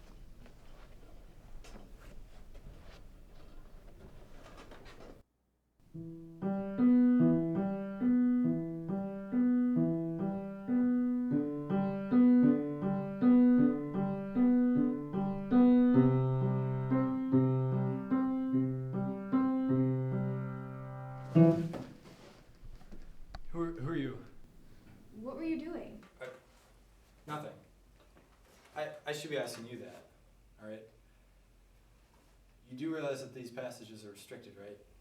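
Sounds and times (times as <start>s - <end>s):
gentle piano melody: 5.9s - 21.8s.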